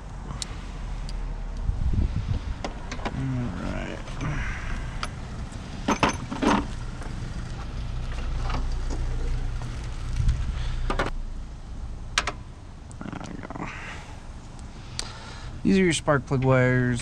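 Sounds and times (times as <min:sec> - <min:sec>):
steady low hum: 0:00.0 - 0:17.0
tools clicking and clunking: 0:02.6 - 0:03.2, 0:04.0 - 0:09.7, 0:10.8 - 0:11.2.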